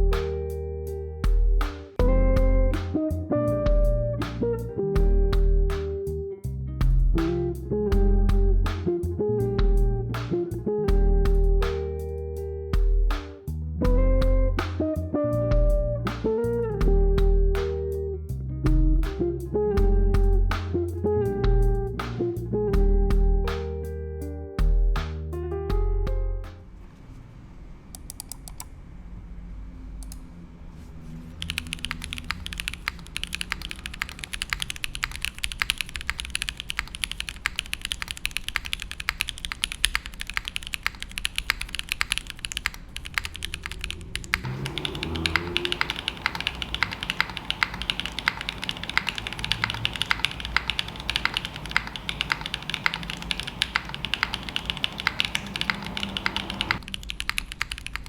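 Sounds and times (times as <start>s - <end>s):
fast mechanical keyboard typing: 31.4s - 58.0s.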